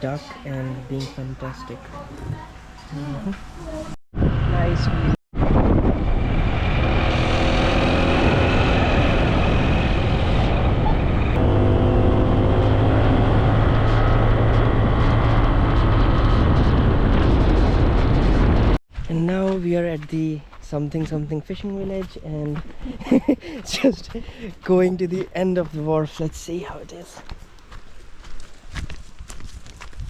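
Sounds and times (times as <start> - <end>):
wind noise on microphone: 3.8 - 19.2, 28.6 - 30.0.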